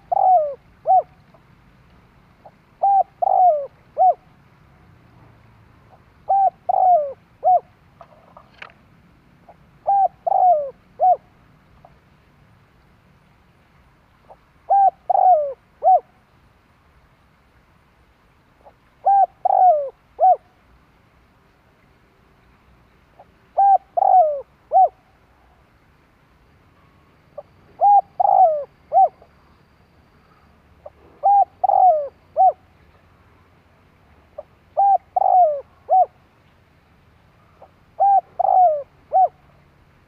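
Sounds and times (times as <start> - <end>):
dove cooing: 0.0 - 1.2, 2.4 - 4.3, 5.9 - 8.4, 9.5 - 11.3, 14.3 - 16.1, 18.6 - 20.5, 23.2 - 25.0, 27.4 - 29.3, 30.3 - 32.7, 34.4 - 36.2, 37.4 - 39.6.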